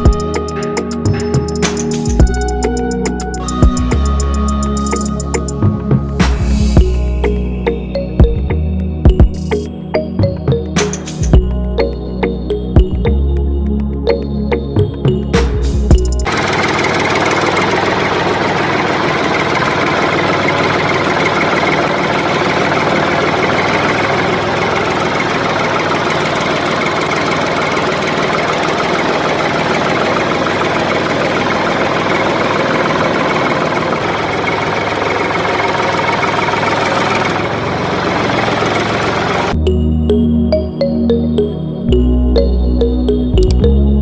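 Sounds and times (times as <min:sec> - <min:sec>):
small engine clattering: 0:15.9 - 0:39.6.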